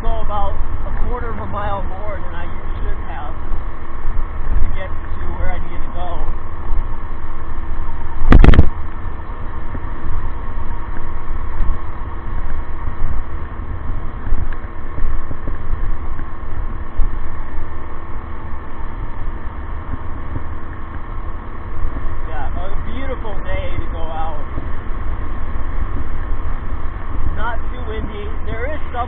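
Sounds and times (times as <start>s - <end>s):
wind buffeting microphone: 0.0s - 29.0s
electric motor hum: 0.2s - 29.0s
loud bump: 8.2s - 8.8s.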